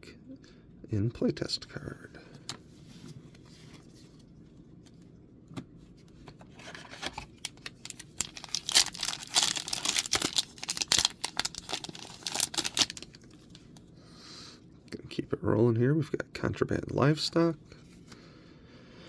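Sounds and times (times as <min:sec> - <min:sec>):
wrapper crackling and tearing: 0:06.8 - 0:13.7.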